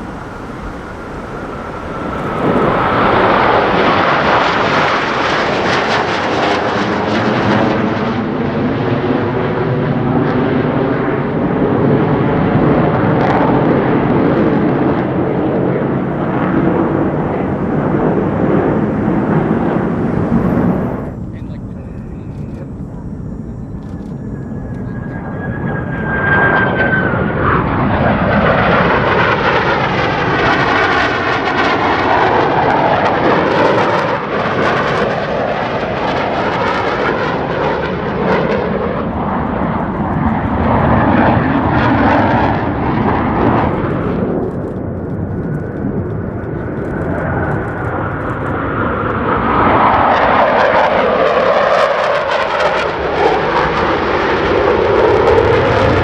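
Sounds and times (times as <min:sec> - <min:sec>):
jet roar: 0:00.0 - 0:56.0.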